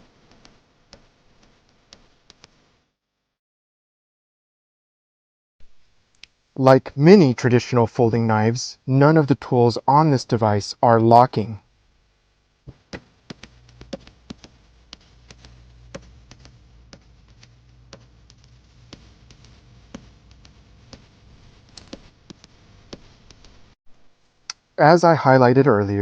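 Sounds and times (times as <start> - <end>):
small sharp clicks and taps: 12.7 - 23.6.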